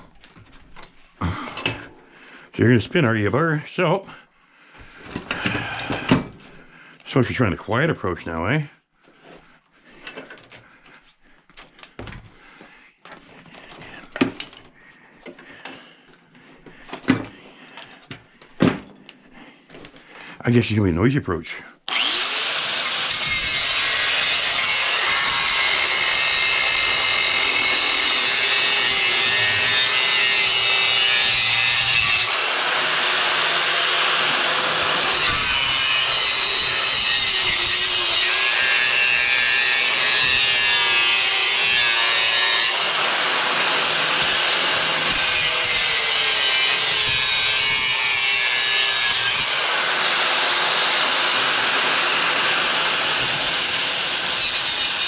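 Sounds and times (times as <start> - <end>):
power tool grinding metal: 21.9 - 55.0.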